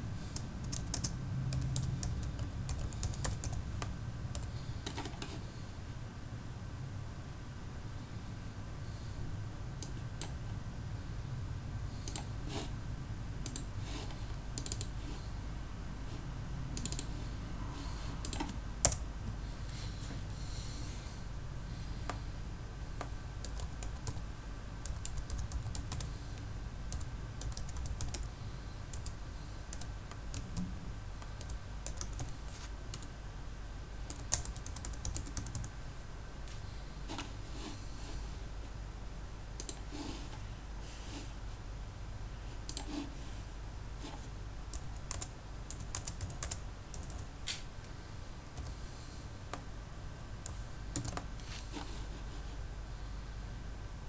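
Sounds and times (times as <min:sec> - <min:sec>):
low steady hum: 0:00.0 - 0:54.0
typing on computer keyboard: 0:00.6 - 0:05.3, 0:12.0 - 0:12.3, 0:13.4 - 0:13.7, 0:14.6 - 0:14.9, 0:16.8 - 0:17.1, 0:18.2 - 0:19.0, 0:23.4 - 0:24.2, 0:24.8 - 0:26.1, 0:26.9 - 0:28.3, 0:28.9 - 0:30.7, 0:31.3 - 0:33.1, 0:34.1 - 0:35.7, 0:44.7 - 0:47.2, 0:50.9 - 0:51.3.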